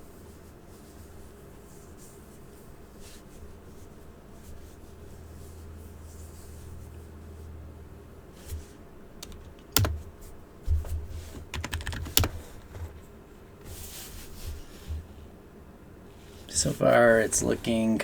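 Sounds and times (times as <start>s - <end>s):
keyboard typing: 9.2s - 10.1s, 11.3s - 13.1s.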